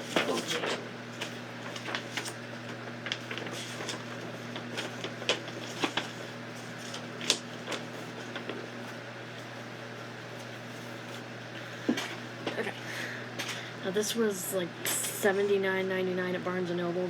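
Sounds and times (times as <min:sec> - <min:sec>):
paper poster crinkling: 0:00.0 - 0:09.5
room fan humming: 0:00.0 - 0:17.0.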